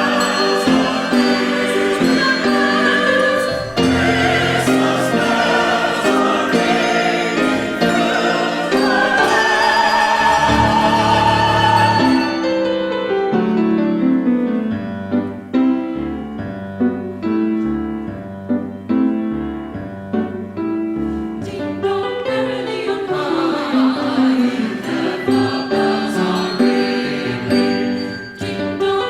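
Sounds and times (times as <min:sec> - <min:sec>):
struck notes: 0:00.0 - 0:13.2
choir singing: 0:00.0 - 0:13.4, 0:21.4 - 0:29.0
instrumental accompaniment: 0:00.0 - 0:29.0.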